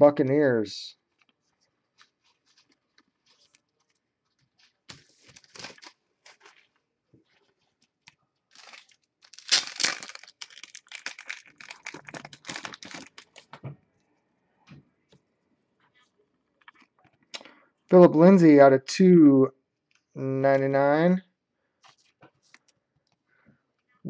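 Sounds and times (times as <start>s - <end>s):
wrapper tearing and crinkling: 4.6s - 6.8s, 8.5s - 13.6s.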